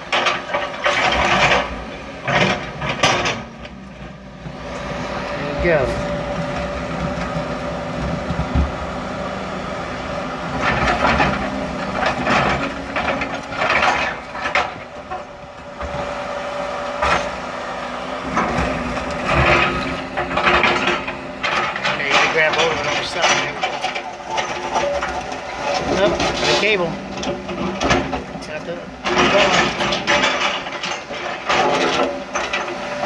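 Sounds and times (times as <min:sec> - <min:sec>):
excavator engine running: 0:00.0 - 0:33.0
bucket scraping and crunching concrete: 0:18.2 - 0:32.1.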